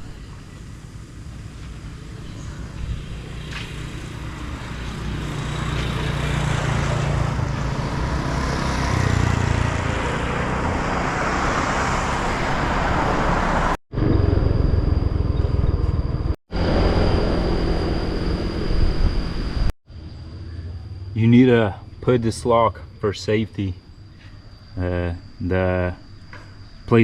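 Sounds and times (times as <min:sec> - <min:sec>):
rushing wind: 0:00.0 - 0:19.7
motor scooter engine rumble: 0:00.0 - 0:22.0
road noise: 0:00.0 - 0:27.0.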